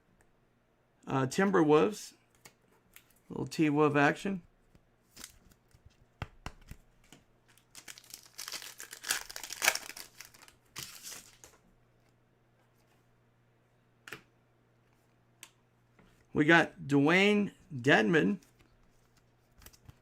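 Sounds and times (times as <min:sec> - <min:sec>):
wrapper crinkling and tearing: 0:07.5 - 0:11.5.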